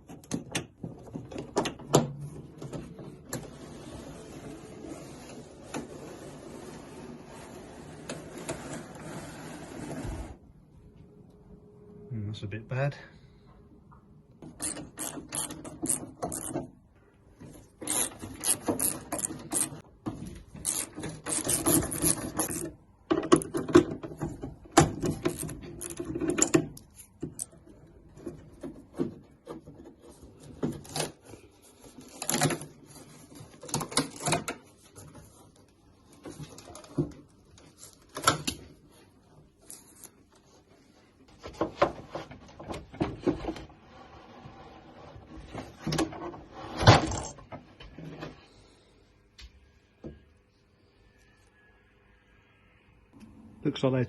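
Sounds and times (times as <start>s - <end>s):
hand tools clicking and rattling: 14.5s - 16.7s, 17.8s - 19.8s, 20.6s - 24.2s, 24.9s - 27.6s.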